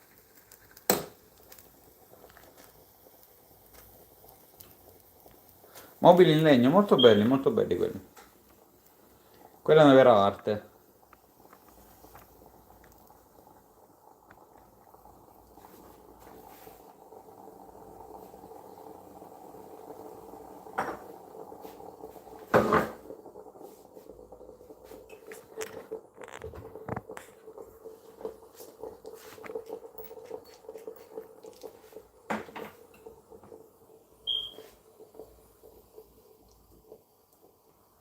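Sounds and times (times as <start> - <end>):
dishes knocked and set down: 20.8 - 21.1, 22.5 - 23.0, 32.3 - 32.8.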